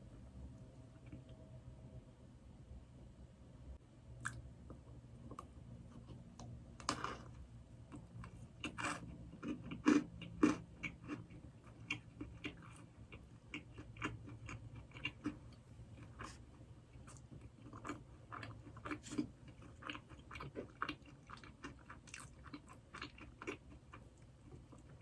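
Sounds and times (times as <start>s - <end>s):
chewing soft doughnut: 5.2s - 25.0s.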